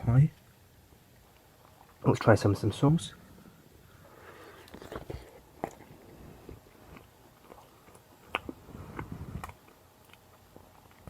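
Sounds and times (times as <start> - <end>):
person chewing food: 4.0 - 11.0.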